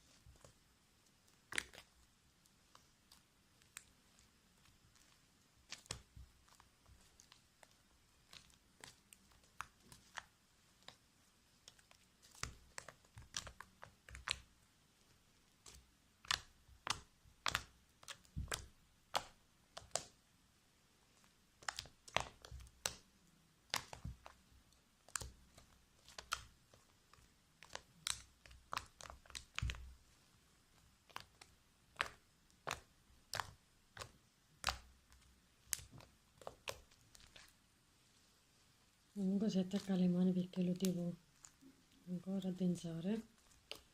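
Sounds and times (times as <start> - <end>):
slime kneaded clicking and popping: 1.3 - 2.0, 2.7 - 14.5, 15.5 - 20.2, 21.5 - 30.0, 30.7 - 37.5, 39.6 - 39.9, 43.2 - 43.9.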